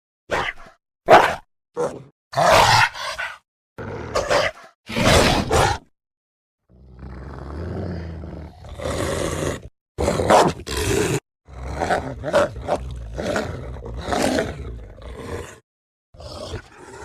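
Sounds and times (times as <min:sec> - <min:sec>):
werewolf growling roars: 0:06.7 - 0:15.6, 0:16.2 - 0:17.0.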